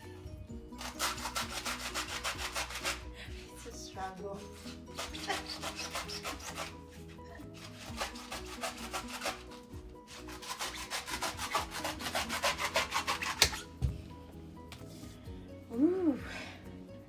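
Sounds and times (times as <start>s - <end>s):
faint background music: 0.0s - 17.0s
knife scraping coconut husk: 0.8s - 3.0s, 4.4s - 13.7s.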